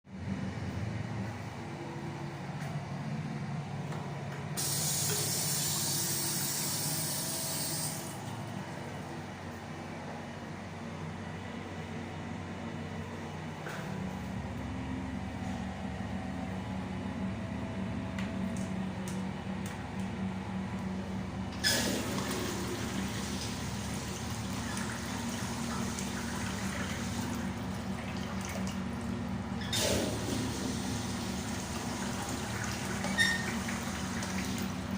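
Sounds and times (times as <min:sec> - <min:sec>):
low ventilation hum: 0:00.1 - 0:34.9
water hissing from fixture: 0:04.6 - 0:08.0
water running from a fixture: 0:04.6 - 0:08.3, 0:21.6 - 0:34.9.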